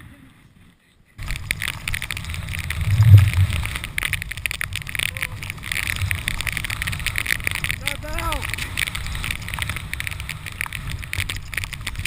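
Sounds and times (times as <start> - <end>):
skis scraping over snow: 1.2 - 12.0
wind buffeting microphone: 1.2 - 12.0
loud low thump: 2.8 - 3.5.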